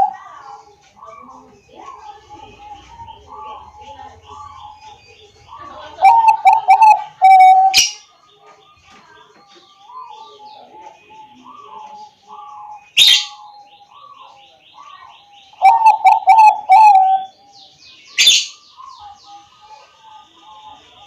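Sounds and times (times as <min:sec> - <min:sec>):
doves cooing: 0:00.0 - 0:08.0, 0:09.0 - 0:17.4
small birds chirping: 0:00.0 - 0:21.0.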